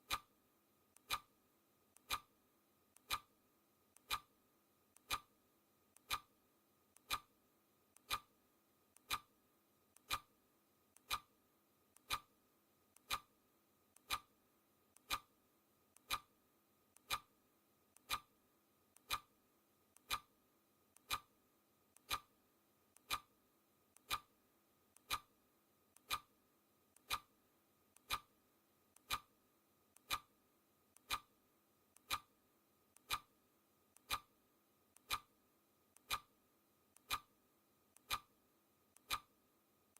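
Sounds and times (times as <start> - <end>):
clock ticking: 0.0 - 0.3, 1.0 - 1.3, 1.9 - 2.3, 2.9 - 3.3, 3.9 - 4.3, 4.9 - 5.3, 5.9 - 6.3, 6.9 - 7.3, 7.9 - 8.3, 8.9 - 9.3, 9.9 - 10.3, 10.9 - 11.3, 11.9 - 12.3, 12.9 - 13.3, 13.9 - 14.3, 14.9 - 15.3, 15.9 - 16.3, 16.9 - 17.3, 17.9 - 18.3, 18.9 - 20.3, 20.9 - 21.3, 21.9 - 22.3, 22.9 - 24.3, 24.9 - 25.3, 25.9 - 26.3, 27.0 - 28.4, 29.0 - 29.3, 30.0 - 30.3, 31.0 - 31.4, 32.0 - 32.4, 33.0 - 33.4, 34.0 - 34.4, 35.0 - 35.4, 36.0 - 36.3, 37.0 - 37.4, 38.0 - 38.4, 39.0 - 39.4.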